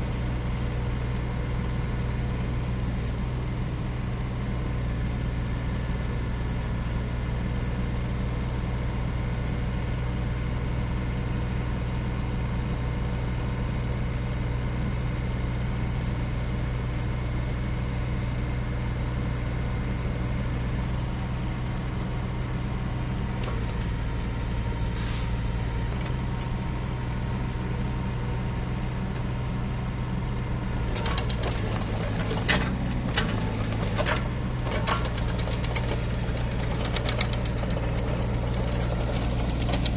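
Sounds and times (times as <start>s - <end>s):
diesel engine running: 0.0s - 39.9s
brief hiss: 24.9s - 25.5s
sharp clicks and knocks: 30.9s - 39.9s.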